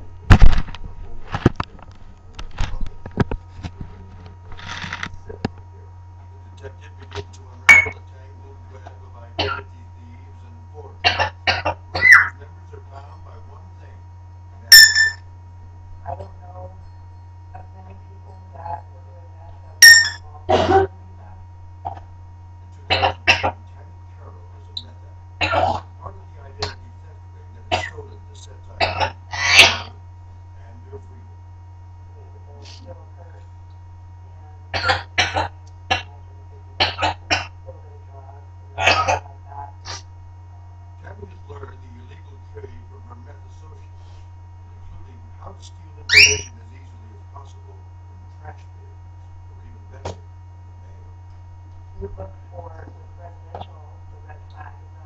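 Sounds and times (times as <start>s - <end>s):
parrot coughing: 7.7s - 8.0s, 9.4s - 9.7s, 11.0s - 12.4s, 14.7s - 15.2s, 19.8s - 20.9s, 22.9s - 23.6s, 25.4s - 25.9s, 28.8s - 30.0s, 34.7s - 36.1s, 36.8s - 37.6s, 38.8s - 40.0s, 46.1s - 46.5s.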